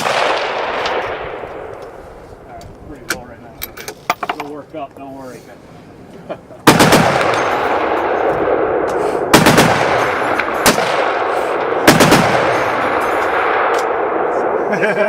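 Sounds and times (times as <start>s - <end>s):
rapid gunfire: 6.7s - 7.9s, 9.3s - 13.7s.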